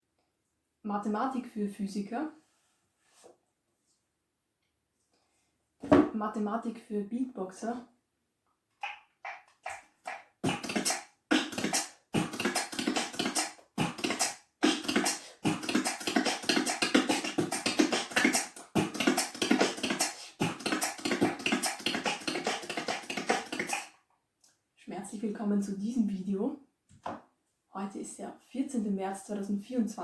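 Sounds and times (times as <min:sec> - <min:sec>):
person beatboxing: 0:08.8 - 0:24.0.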